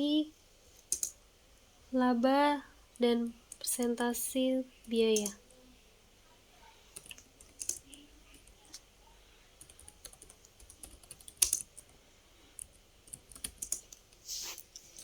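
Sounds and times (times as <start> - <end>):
keyboard typing: 0.8 - 1.2, 4.9 - 5.6, 6.9 - 8.8, 9.6 - 12.0, 12.6 - 14.1.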